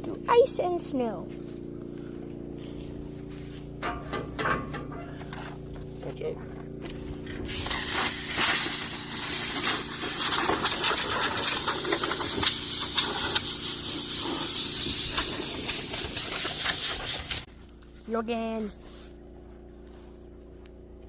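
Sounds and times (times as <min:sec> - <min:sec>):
engine humming: 0:00.0 - 0:21.0
loud steady hissing: 0:07.2 - 0:17.5.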